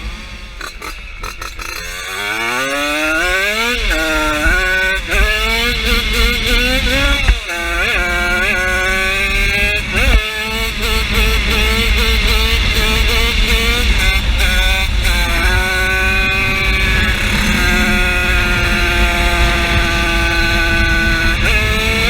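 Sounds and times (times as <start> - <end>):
high-revving small engine: 0.0 - 22.0.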